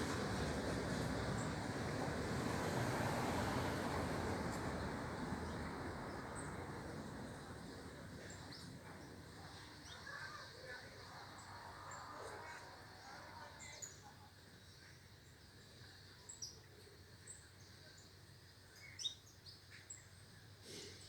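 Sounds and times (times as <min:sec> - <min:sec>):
passing vehicle rushing: 0:00.0 - 0:08.4.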